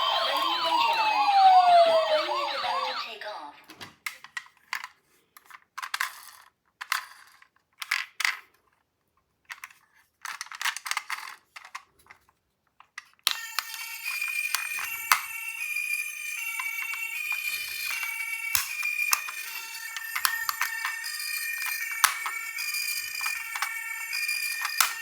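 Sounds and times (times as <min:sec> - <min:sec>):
toy electronic siren tune: 0:00.0 - 0:03.3, 0:13.3 - 0:25.0
plastic toy cars clattering: 0:04.0 - 0:13.8, 0:17.6 - 0:21.0, 0:21.6 - 0:22.4, 0:23.0 - 0:23.8, 0:24.5 - 0:25.0
clicks: 0:24.5 - 0:25.0.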